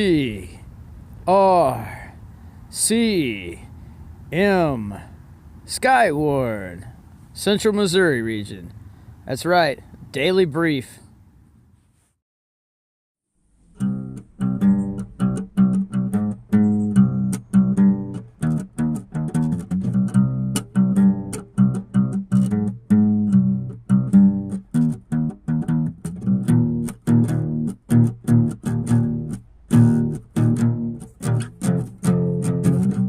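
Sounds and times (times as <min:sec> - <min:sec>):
plucked string music: 0:13.6 - 0:33.0.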